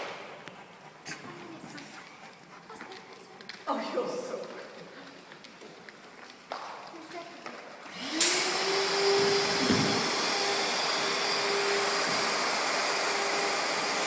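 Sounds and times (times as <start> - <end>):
small electric motor whining: 7.9 - 14.0.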